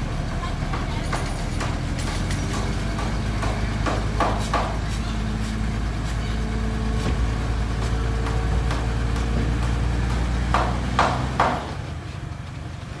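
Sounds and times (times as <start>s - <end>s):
heavy diesel engine running: 0.0s - 13.0s
sharp knocks: 0.7s - 5.0s, 8.2s - 11.8s.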